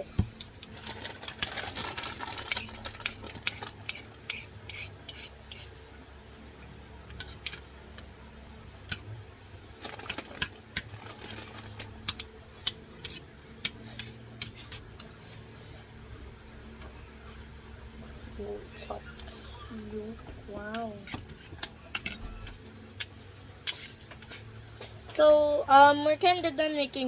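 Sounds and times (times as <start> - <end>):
spoon clinking and scraping bowl: 21.0 - 22.6.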